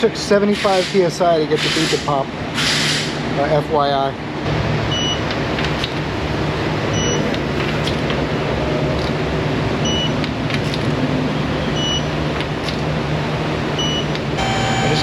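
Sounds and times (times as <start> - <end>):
machine running with low hum: 8.2 - 15.0.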